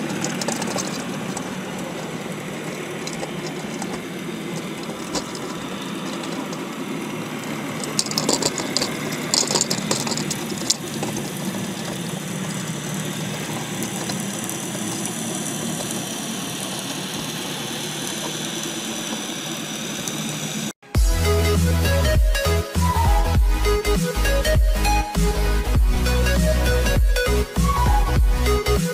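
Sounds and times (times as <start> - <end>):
clattering knocks: 0.0 - 6.7, 7.8 - 12.2
engine drone: 0.0 - 28.9.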